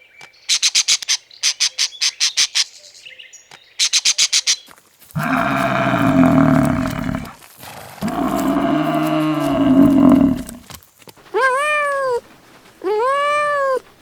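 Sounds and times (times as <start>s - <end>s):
cow mooing: 5.2s - 7.4s, 8.0s - 10.6s.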